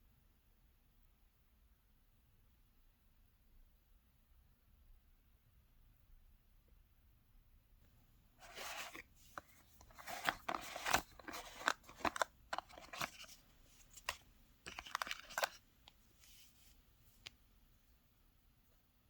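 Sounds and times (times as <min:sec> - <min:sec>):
paper rustling and crinkling: 0:08.4 - 0:15.6.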